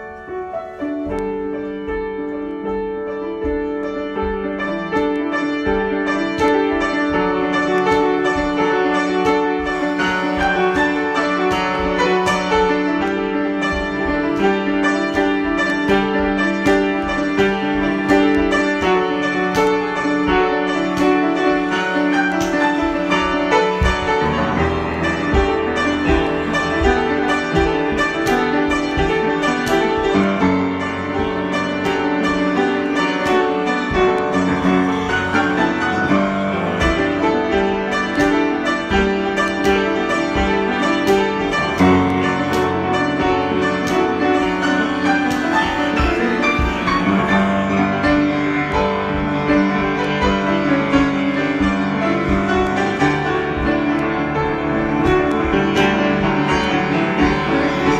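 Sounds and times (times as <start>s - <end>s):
piano improvisation: 0.0s - 57.9s.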